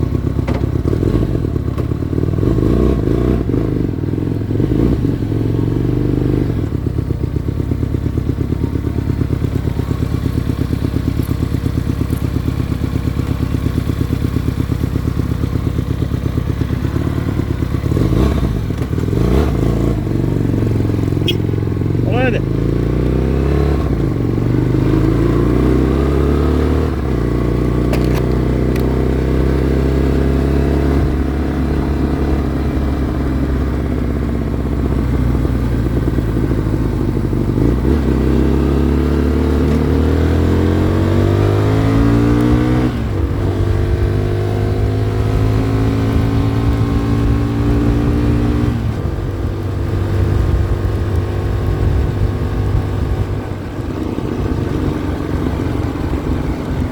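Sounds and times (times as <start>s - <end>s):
motorcycle engine revving: 0.0s - 56.9s
wind noise on microphone: 45.3s - 56.9s.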